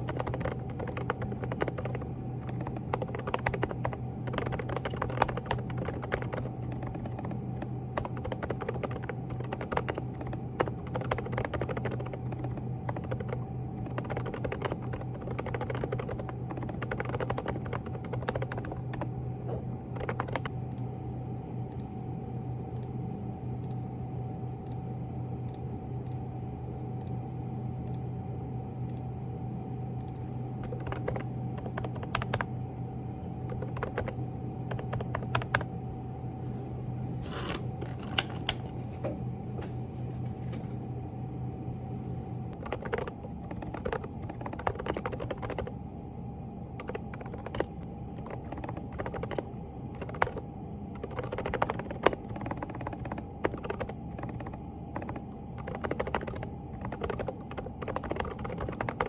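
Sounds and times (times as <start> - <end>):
typing on mechanical keyboard: 0.0 - 19.1, 20.0 - 20.5, 30.6 - 32.5, 33.5 - 35.7, 42.6 - 45.7, 46.8 - 50.4, 51.0 - 59.0
low steady hum: 0.0 - 59.0.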